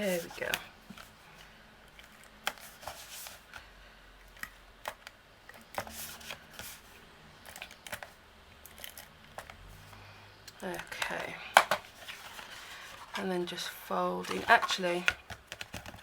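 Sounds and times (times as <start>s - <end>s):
cardstock clicks and rustles: 14.2s - 16.0s.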